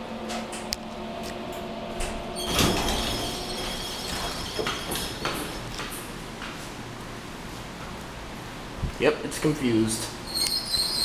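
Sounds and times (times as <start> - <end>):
elevator hum: 0.0 - 9.0
elevator rumble and jolt: 0.2 - 7.0.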